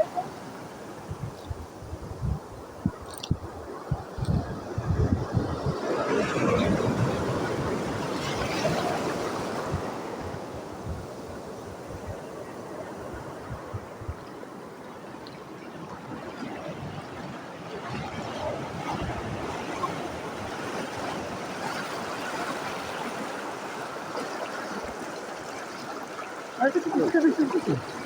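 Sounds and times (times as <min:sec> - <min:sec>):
wind buffeting microphone: 0:00.0 - 0:14.9, 0:16.0 - 0:23.1
water rushing like waves: 0:00.0 - 0:28.0.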